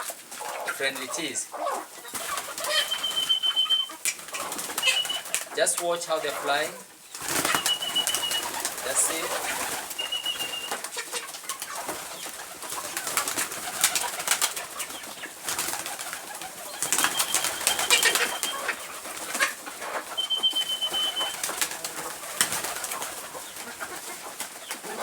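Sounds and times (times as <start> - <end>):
birds clicking and fluttering: 0.0 - 25.0
high whistling bird notes: 2.6 - 5.3, 7.3 - 10.8, 16.8 - 18.8, 20.1 - 21.6.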